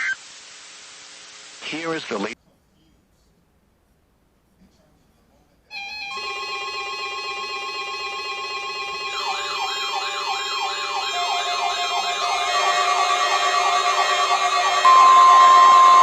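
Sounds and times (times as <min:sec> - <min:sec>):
electronic alarm tones: 0:05.7 - 0:16.0
siren wail: 0:05.7 - 0:16.0.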